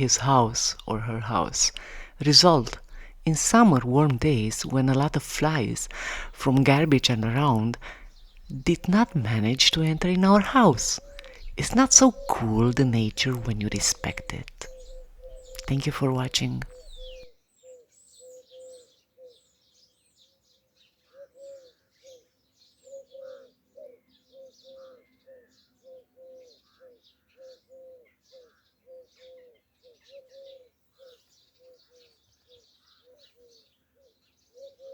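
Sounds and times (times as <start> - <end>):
high bird chirps: 0.0 - 17.3.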